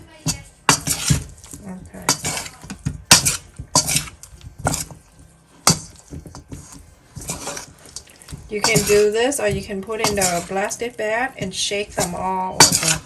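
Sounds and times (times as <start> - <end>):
utensil clinking on bowl: 0.2 - 13.0.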